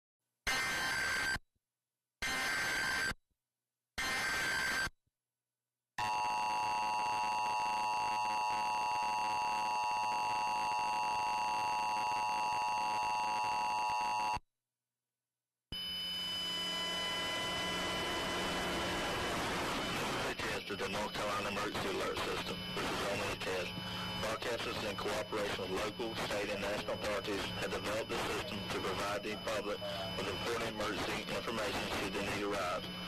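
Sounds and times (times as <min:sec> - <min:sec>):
two-tone alarm: 0:00.5 - 0:01.4, 0:02.2 - 0:03.2, 0:06.0 - 0:14.4, 0:15.8 - 0:33.0.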